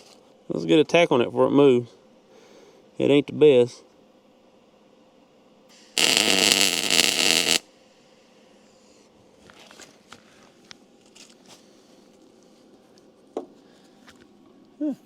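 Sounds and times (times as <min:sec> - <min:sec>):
arc welder welding: 0:05.7 - 0:07.6.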